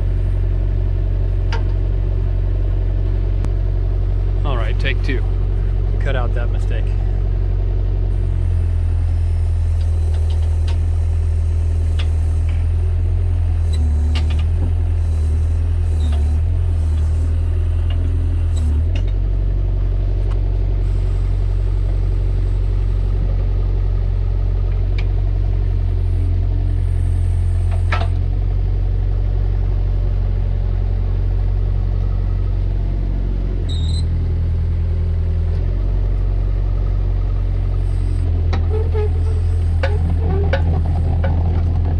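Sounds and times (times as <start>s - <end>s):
excavator diesel engine running: 0.0s - 41.9s
metal clanks and clicks: 39.8s - 41.9s.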